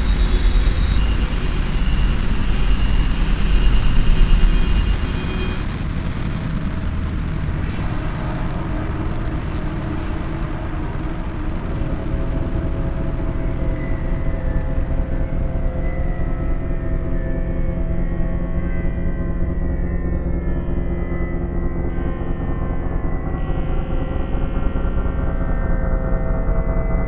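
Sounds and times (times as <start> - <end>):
rumbling noise drone: 0.0 - 27.0
faint steady tones: 12.2 - 27.0.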